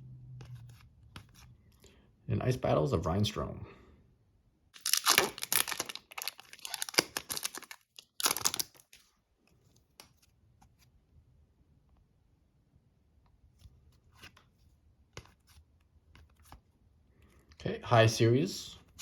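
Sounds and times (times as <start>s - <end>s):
cards being handled: 0.4s - 1.5s, 4.8s - 10.8s, 13.6s - 16.7s
foil wrapper crinkling and tearing: 4.8s - 9.0s.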